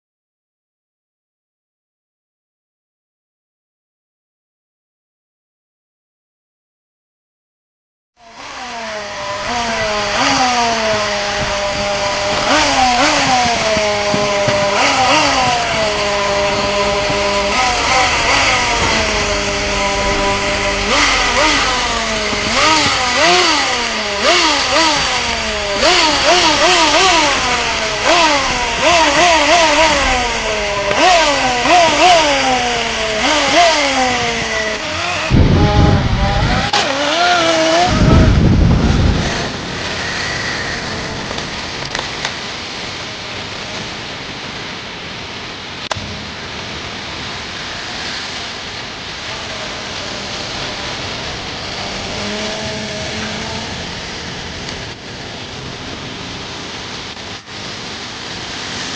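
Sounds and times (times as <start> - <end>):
small engine idling and revving: 8.2 - 44.6, 45.8 - 58.9
low rumble: 9.8 - 42.2.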